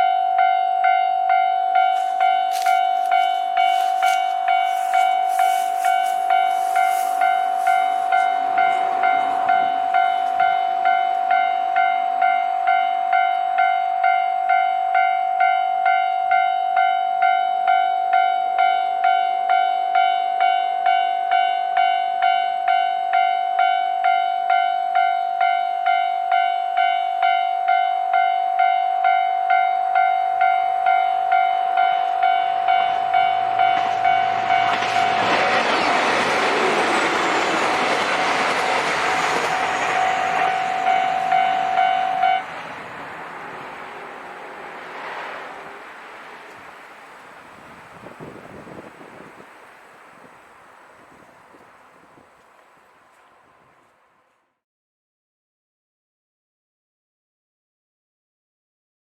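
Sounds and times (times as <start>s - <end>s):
level crossing warning bell ringing: 0.0s - 44.4s
diesel train rumbling: 0.0s - 54.4s.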